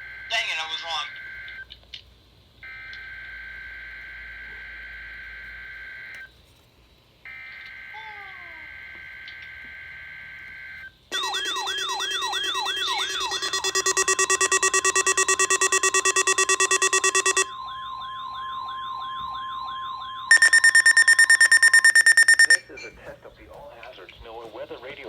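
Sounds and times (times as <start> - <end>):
alert data header buzz: 11.1 - 17.5, 20.3 - 22.7
loud fast beeping: 11.1 - 17.5, 20.3 - 22.7
rapid pulsing beeps: 11.1 - 17.5, 20.3 - 22.7
warbling siren: 11.1 - 22.6
steady warning tone: 11.1 - 22.7.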